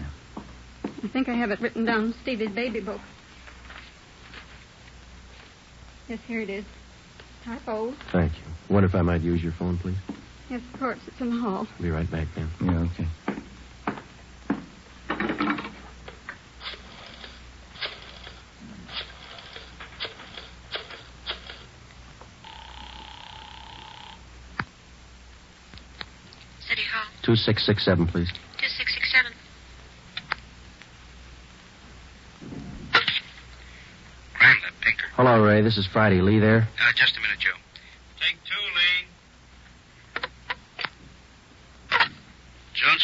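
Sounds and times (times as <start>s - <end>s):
recording hiss and hum: 0.0s - 43.0s
book pages rustling: 3.4s - 4.7s
footstep clicks: 10.0s - 10.8s, 12.6s - 16.4s
telephone tone: 22.4s - 24.3s.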